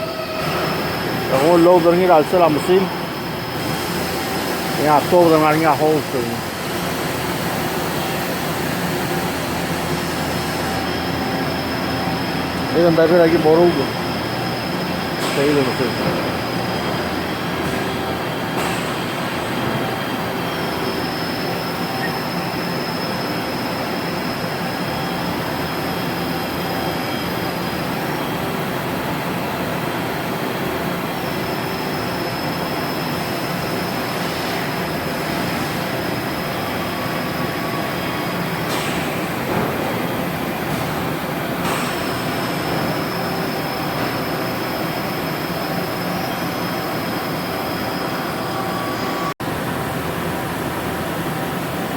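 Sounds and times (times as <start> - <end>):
metalworking machinery running: 0.0 - 51.9.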